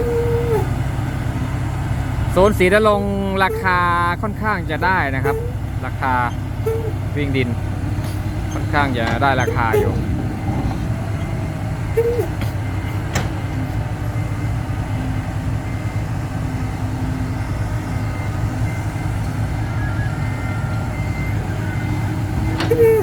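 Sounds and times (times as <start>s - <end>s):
diesel engine rumbling: 0.0s - 23.0s
short squeak: 5.2s - 7.0s, 8.0s - 13.8s, 19.8s - 23.0s.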